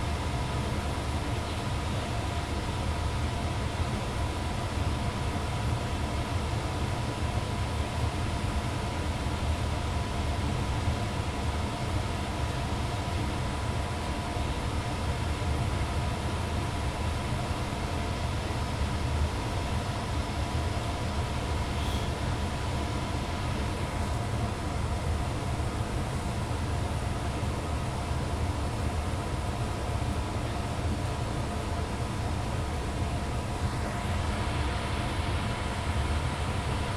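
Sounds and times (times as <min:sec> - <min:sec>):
furnace blower running: 0:17.9 - 0:36.9.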